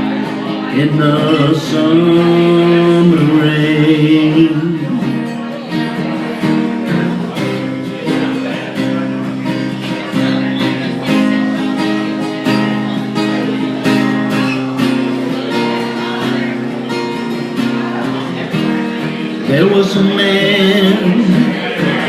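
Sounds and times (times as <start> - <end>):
acoustic guitar strumming chords: 0.0 - 22.0.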